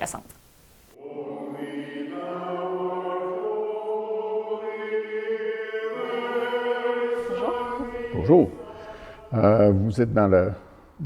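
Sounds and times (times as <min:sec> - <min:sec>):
choir singing sustained chords: 0:01.0 - 0:11.0.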